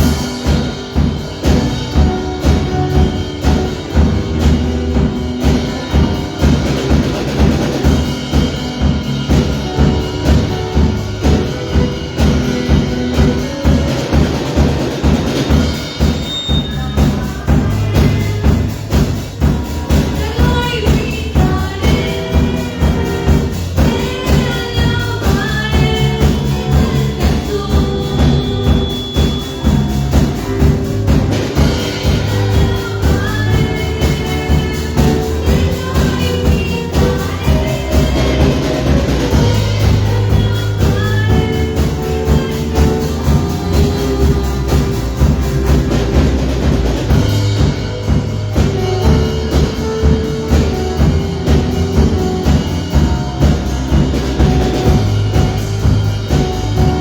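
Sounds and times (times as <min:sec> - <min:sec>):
band with driving beat: 0:00.0 - 0:57.0
person singing: 0:16.0 - 0:30.8, 0:31.6 - 0:55.6.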